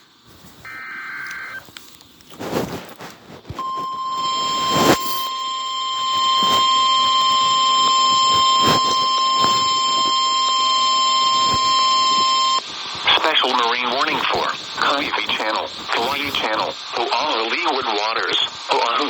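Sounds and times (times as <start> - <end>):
crackling static: 0.0 - 19.0
steady alarm tone: 3.6 - 13.6.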